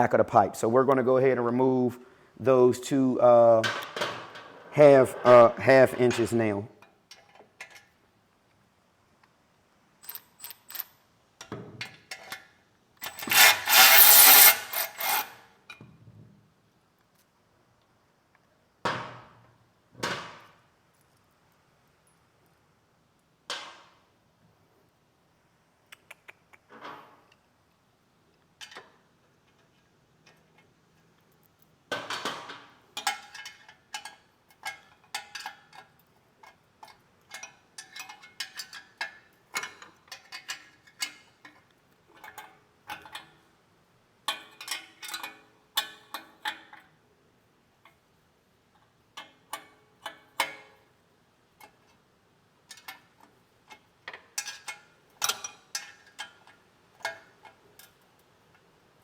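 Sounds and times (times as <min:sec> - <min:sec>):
hand ratchet clicking: 0:13.0 - 0:15.4.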